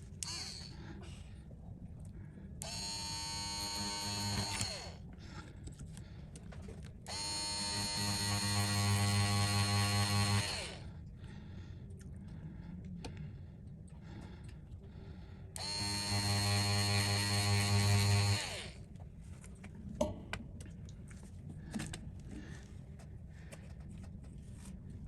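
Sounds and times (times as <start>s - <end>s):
small electric motor buzzing: 0.1s - 0.8s, 2.6s - 5.0s, 7.1s - 10.8s, 15.6s - 18.9s.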